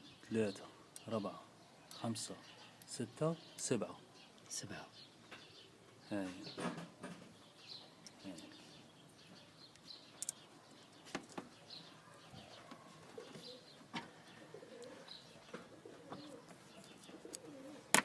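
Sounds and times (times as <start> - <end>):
lower bird calls: 7.4 - 17.9
sharp clicks: 9.7 - 10.4.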